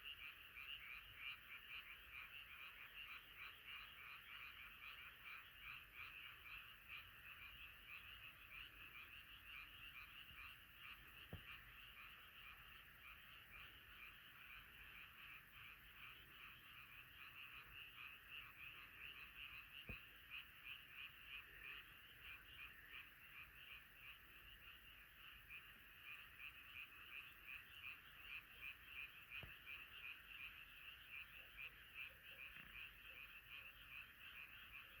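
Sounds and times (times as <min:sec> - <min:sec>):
frogs calling: 0:00.0 - 0:35.0.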